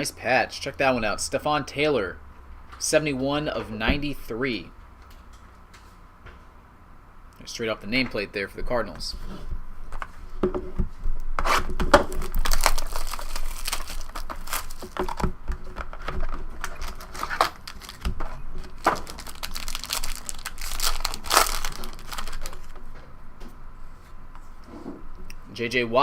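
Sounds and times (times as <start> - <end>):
packaging tearing and crinkling: 11.5 - 15.3, 15.9 - 22.8.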